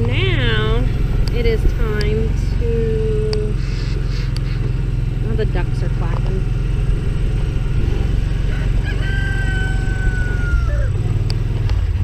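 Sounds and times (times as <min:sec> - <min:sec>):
steady low rumble: 0:00.0 - 0:12.0
rooster crowing: 0:08.4 - 0:11.0.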